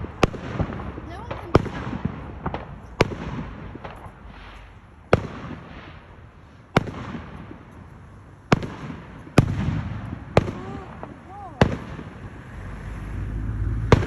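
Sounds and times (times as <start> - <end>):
faint fireworks pops: 0.0 - 12.4
fireworks bangs with echo: 0.0 - 12.5, 13.8 - 14.0.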